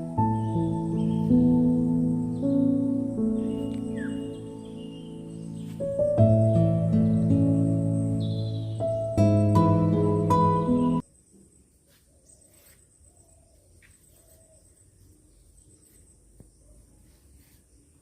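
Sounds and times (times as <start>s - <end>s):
background music: 0.0s - 11.0s
faint outdoor ambience: 0.0s - 18.0s.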